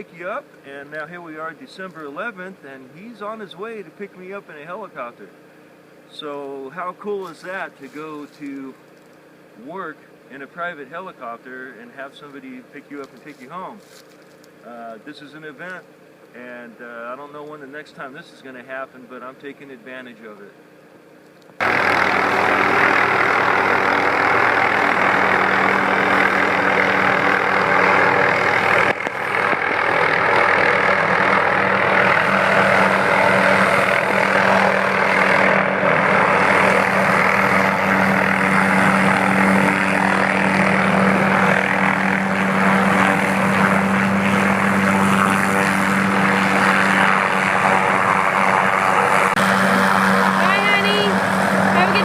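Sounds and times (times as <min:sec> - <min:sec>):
helicopter rotor and turbine: 0:20.6 - 0:52.0.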